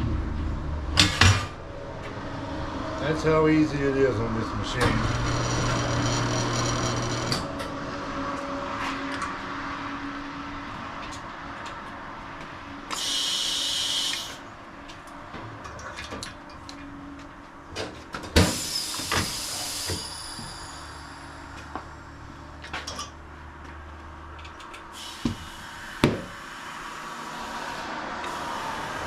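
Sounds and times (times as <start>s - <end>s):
machine hum: 1.6s - 8.2s
compressed air hissing: 12.9s - 14.4s, 18.4s - 20.7s, 24.9s - 29.0s.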